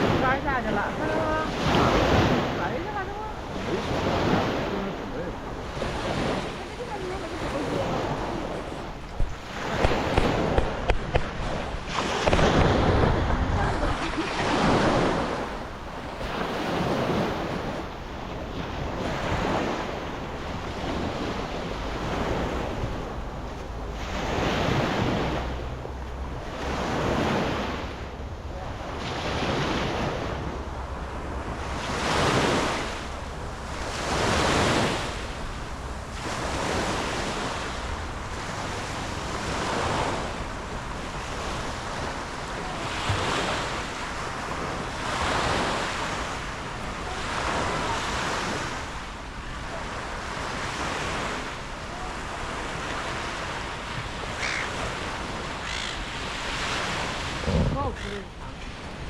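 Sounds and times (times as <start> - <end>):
wind buffeting microphone: 0.0 - 28.6, 53.0 - 59.0
waves washing in: 0.0 - 59.0.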